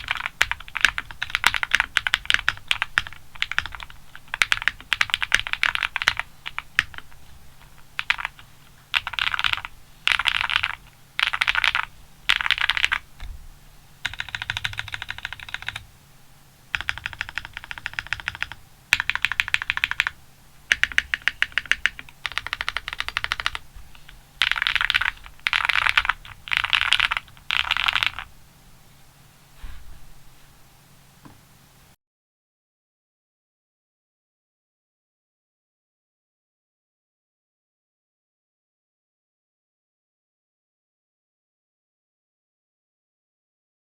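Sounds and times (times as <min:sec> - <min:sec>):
mechanical keyboard typing: 0:00.0 - 0:13.1, 0:14.0 - 0:15.9, 0:16.7 - 0:23.7, 0:24.4 - 0:28.3.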